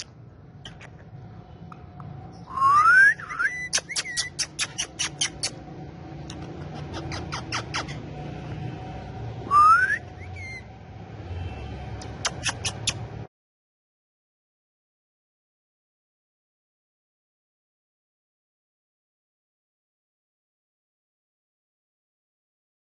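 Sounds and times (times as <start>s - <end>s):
parrot clicking chirps: 0.0s - 2.2s, 3.2s - 5.6s, 6.2s - 8.0s, 12.0s - 13.1s
parrot rising whistles: 2.5s - 5.4s, 9.5s - 10.7s.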